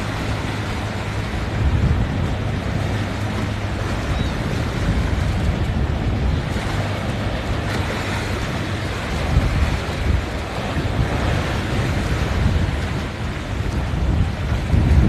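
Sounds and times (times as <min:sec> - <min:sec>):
boat engines droning: 0:00.0 - 0:15.0
waves washing: 0:00.0 - 0:15.0
wind buffeting microphone: 0:00.0 - 0:15.0.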